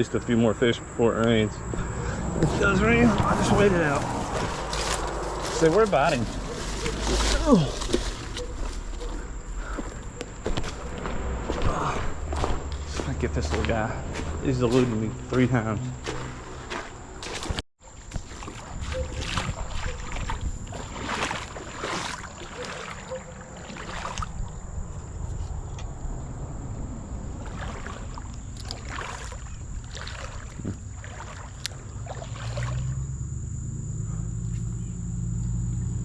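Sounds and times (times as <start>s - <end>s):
steady high whine: 0.0s - 16.0s
low rumble: 0.8s - 15.3s
water splashing in a creek: 1.6s - 24.9s, 26.9s - 33.0s.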